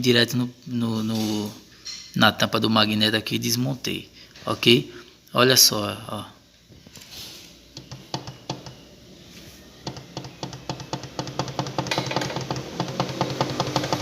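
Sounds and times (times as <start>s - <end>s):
single-cylinder engine running: 9.9s - 14.0s.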